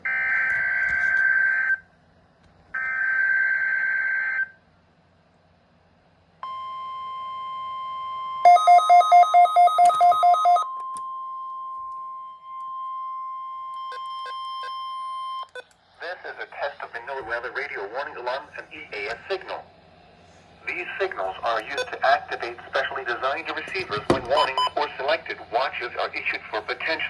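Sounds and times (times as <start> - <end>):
steady warning alarm tone: 6.4 - 15.5, 20.7 - 25.9
fast pulsing beep: 24.2 - 24.8.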